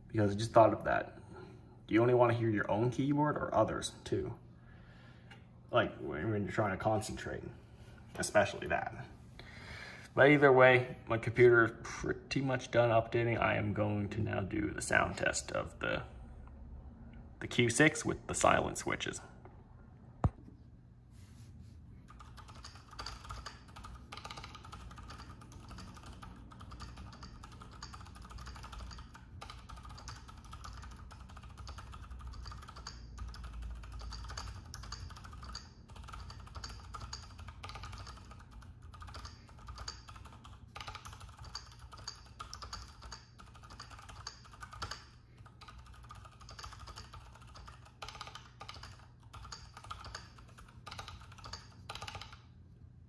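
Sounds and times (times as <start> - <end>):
quiet mechanical keyboard typing: 22.0 - 52.5.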